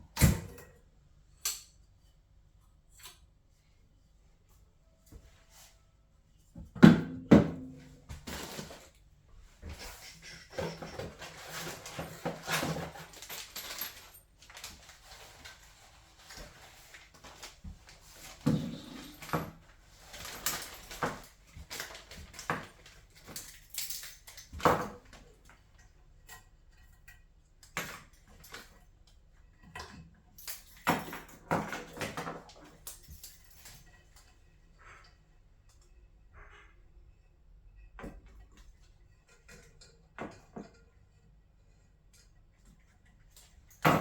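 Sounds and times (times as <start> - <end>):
tools clinking on metal parts: 10.5 - 14.8.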